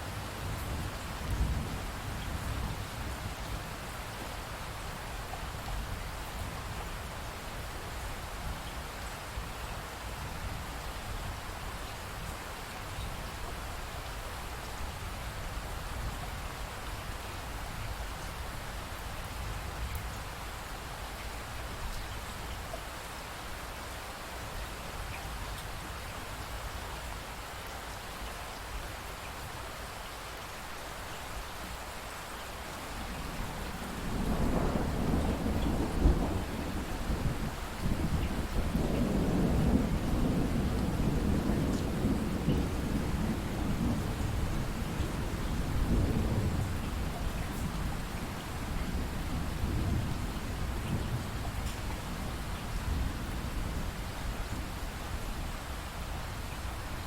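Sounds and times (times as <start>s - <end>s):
steady rain: 0.0s - 57.0s
thunder rolling: 33.1s - 53.8s.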